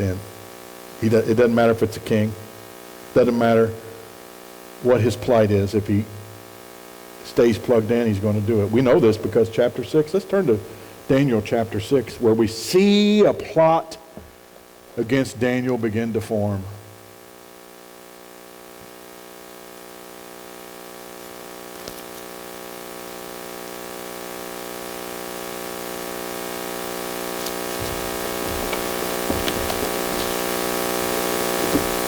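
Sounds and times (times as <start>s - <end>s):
buzzing electrical hum: 0.0s - 32.0s
microphone hiss: 0.0s - 32.0s.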